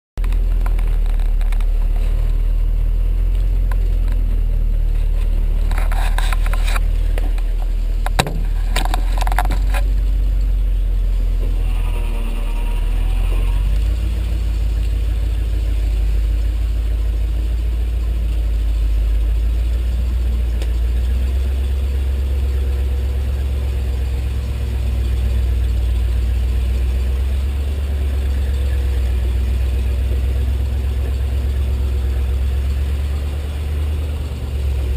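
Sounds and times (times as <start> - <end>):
vehicle engine rumbling: 0.2 - 34.9
rattles: 3.3 - 17.6.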